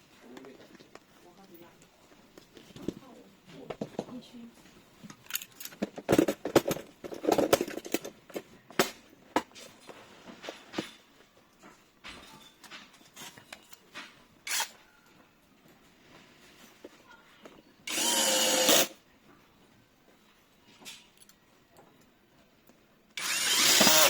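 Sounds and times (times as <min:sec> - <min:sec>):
metal lock parts clicking: 0:05.2 - 0:08.1.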